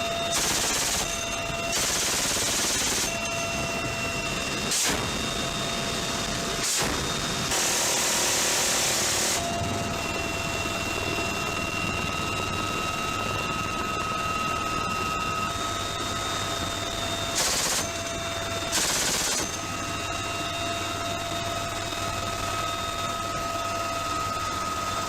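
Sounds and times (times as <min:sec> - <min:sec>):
aircraft engine whine: 0:00.0 - 0:25.0
minigun bursts: 0:00.3 - 0:03.3, 0:06.6 - 0:10.0, 0:17.3 - 0:19.8.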